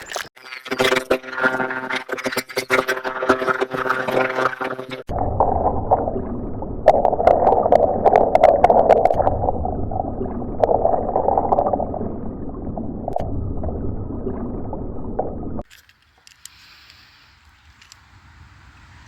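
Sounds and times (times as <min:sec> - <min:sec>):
water bubbling and gurgling: 0:00.4 - 0:15.6.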